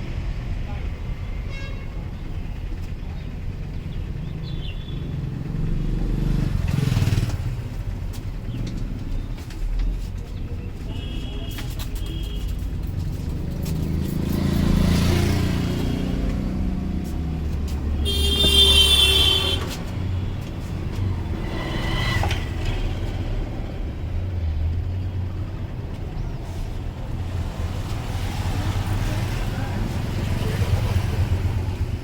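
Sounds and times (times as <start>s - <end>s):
road traffic rumbling: 0.0s - 32.0s
vehicle horn: 1.5s - 2.0s, 10.9s - 12.5s, 18.0s - 19.9s.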